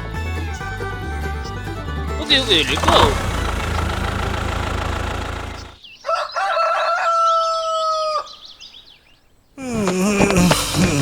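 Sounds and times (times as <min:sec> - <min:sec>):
long animal call: 0:02.2 - 0:05.8.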